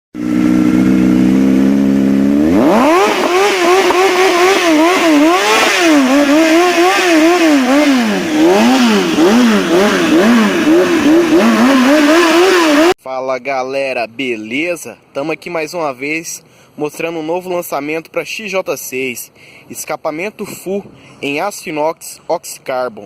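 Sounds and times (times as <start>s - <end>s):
motorcycle engine revving: 0.2s - 13.0s.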